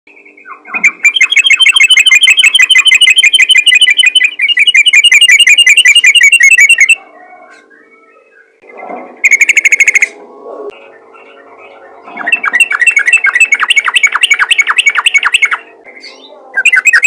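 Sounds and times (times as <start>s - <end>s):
bulbul rapid chattering calls: 0.4s - 7.0s, 8.7s - 17.0s.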